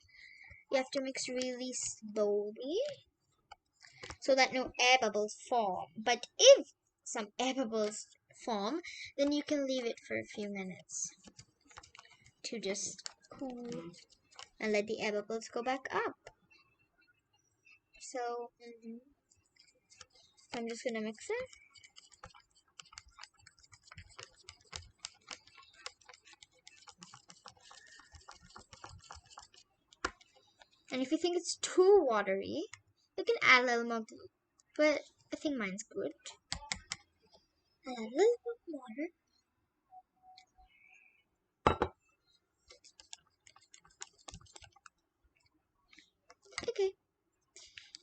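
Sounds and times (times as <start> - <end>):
kitchenware clicking and clinking: 41.7 - 42.0
tool tapping container sides: 41.7 - 42.0.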